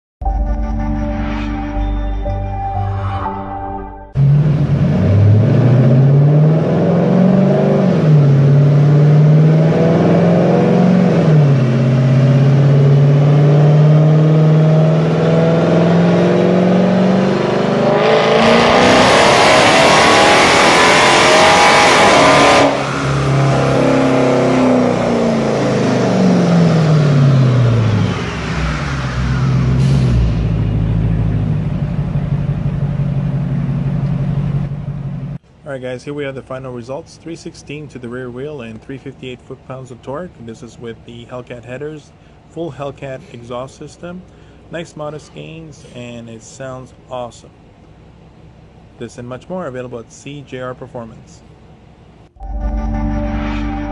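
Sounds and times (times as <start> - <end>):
car engine revving: 4.1 - 35.3.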